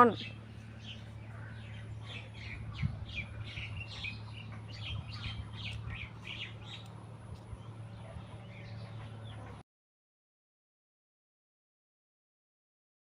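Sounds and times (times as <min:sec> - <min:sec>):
small birds chirping: 0:00.0 - 0:09.6
steady low hum: 0:00.0 - 0:09.6.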